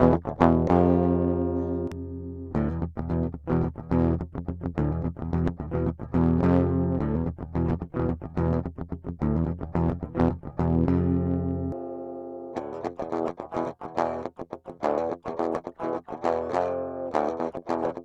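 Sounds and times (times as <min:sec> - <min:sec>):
clean electric guitar: 0:00.0 - 0:18.0.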